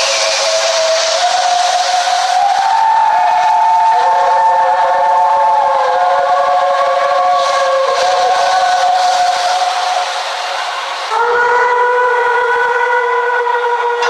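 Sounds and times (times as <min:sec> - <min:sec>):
steam hissing: 0:00.0 - 0:11.2.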